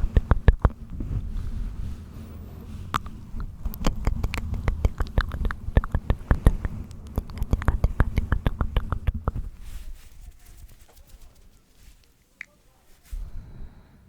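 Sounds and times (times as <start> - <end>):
tapping and clicking on microphone: 0.0 - 1.0, 3.0 - 9.6
low handling rumble: 0.0 - 10.8, 12.9 - 14.0.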